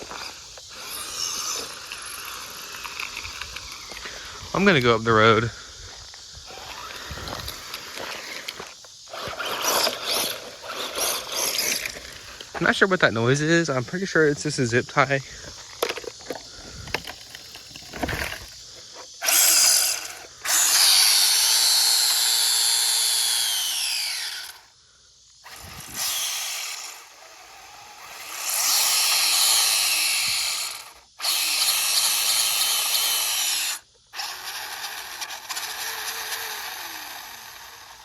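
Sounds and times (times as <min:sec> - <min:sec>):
toy truck electric motor whining: 0:00.0 - 0:12.6, 0:15.5 - 0:24.7, 0:25.4 - 0:38.0.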